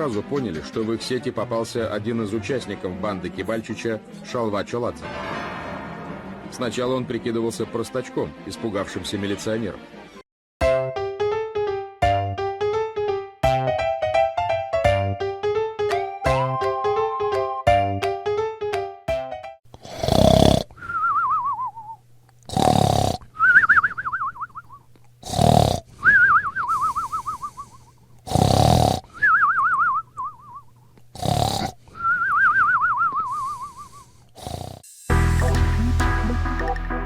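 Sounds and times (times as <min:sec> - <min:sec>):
person snoring: 0:19.7 - 0:20.8, 0:22.5 - 0:23.2, 0:25.2 - 0:25.9, 0:28.3 - 0:29.1, 0:31.2 - 0:31.8, 0:33.3 - 0:35.9
whistling breath out: 0:20.8 - 0:22.0, 0:23.4 - 0:24.7, 0:26.0 - 0:28.0, 0:29.1 - 0:30.7, 0:31.9 - 0:34.3.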